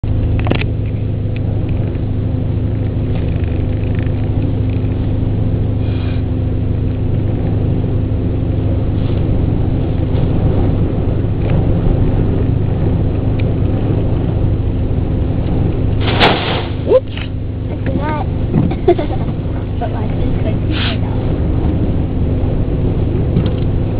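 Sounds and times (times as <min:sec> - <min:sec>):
car engine idling: 0:00.0 - 0:23.9
loud rush of noise: 0:05.0 - 0:23.9.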